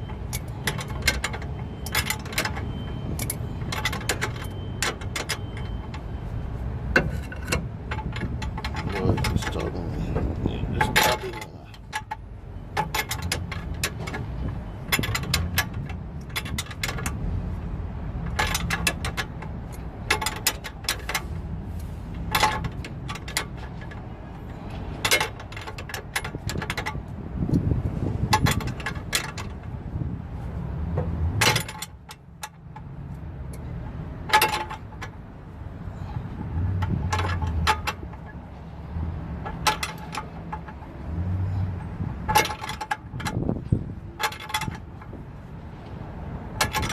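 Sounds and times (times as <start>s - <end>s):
steady low rumble: 2.3s - 25.1s.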